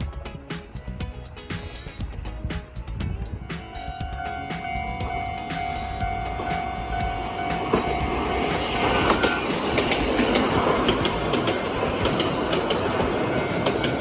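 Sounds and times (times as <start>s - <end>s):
crossing alarm ringing: 4.0s - 14.0s
train wheels clacking over joints: 5.6s - 14.0s.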